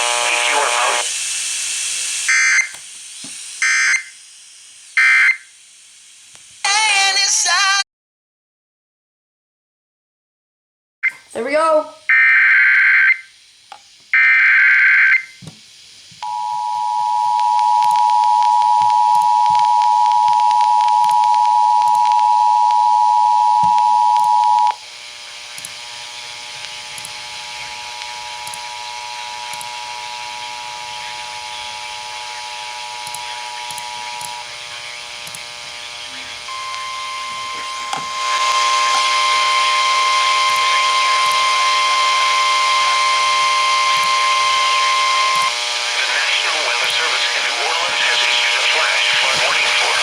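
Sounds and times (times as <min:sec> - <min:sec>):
buzzing hum: 0:00.0 - 0:01.1, 0:16.2 - 0:50.0
static hiss: 0:00.0 - 0:07.8, 0:12.8 - 0:22.9, 0:23.5 - 0:50.0
screeching digital data bursts: 0:03.6 - 0:04.2, 0:23.6 - 0:50.0
two-tone attention signal: 0:16.2 - 0:24.8, 0:36.5 - 0:45.5.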